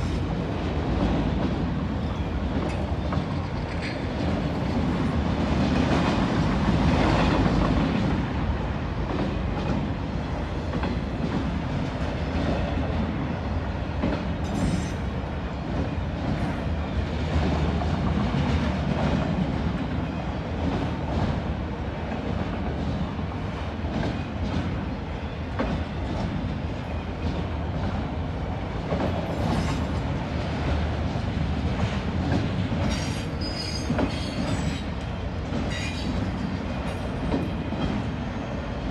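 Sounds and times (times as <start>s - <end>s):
freight train rumbling past: 0.0s - 38.9s
wheels clicking over rail joints: 2.5s - 8.1s
high wheel squeals: 33.0s - 34.9s.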